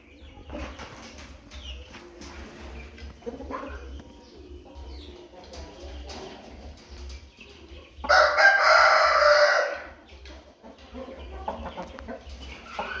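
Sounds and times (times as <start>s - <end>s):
chicken clucking: 0.0s - 13.0s
rooster crowing: 8.1s - 9.9s.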